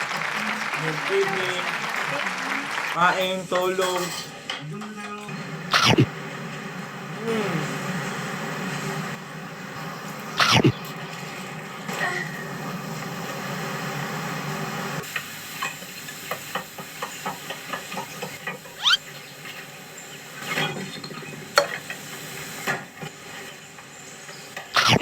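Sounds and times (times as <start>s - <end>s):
food sizzling: 0.0s - 25.0s
utensils clicking on dishes: 3.0s - 6.0s, 15.2s - 19.7s
rising squeak: 18.8s - 19.0s.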